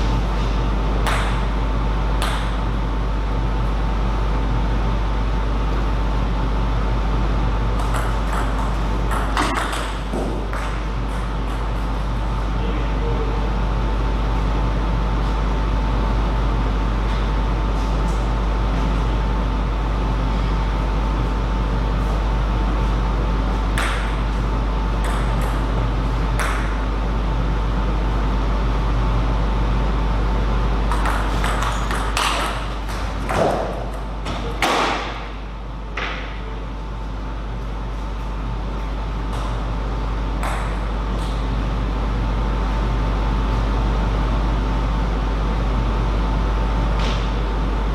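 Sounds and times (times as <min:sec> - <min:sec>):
electrical hum: 0:00.0 - 0:47.9
table tennis ball hits: 0:01.0 - 0:01.6, 0:02.2 - 0:02.6, 0:07.7 - 0:12.0, 0:23.8 - 0:24.3, 0:25.0 - 0:25.8, 0:26.4 - 0:26.8, 0:30.9 - 0:35.3, 0:40.4 - 0:41.4.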